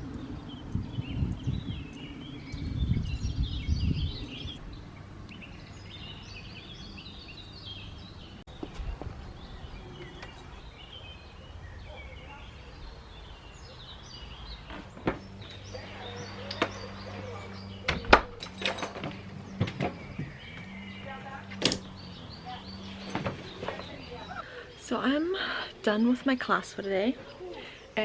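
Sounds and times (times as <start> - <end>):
wind rumble on microphone: 0.0 - 12.2
birds chirping: 0.0 - 28.0
steady low hum: 13.1 - 26.0.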